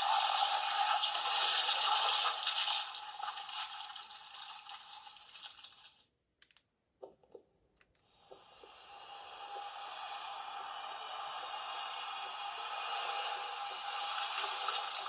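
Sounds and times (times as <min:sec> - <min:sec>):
faint clicks: 0:06.4 - 0:08.4
crackling hissing electronic effect: 0:08.2 - 0:15.0.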